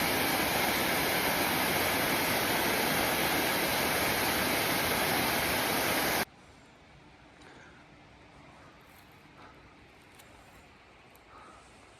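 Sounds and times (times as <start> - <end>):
waterfall rushing: 0.0 - 6.2.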